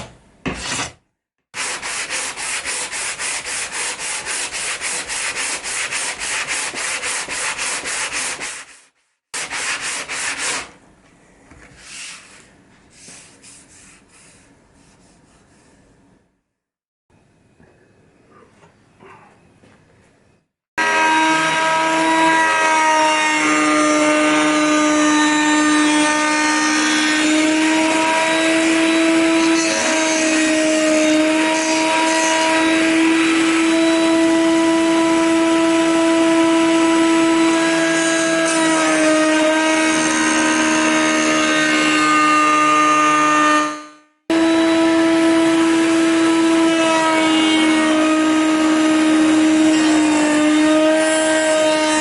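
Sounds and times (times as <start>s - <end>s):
wood router whining: 20.8s - 52.0s.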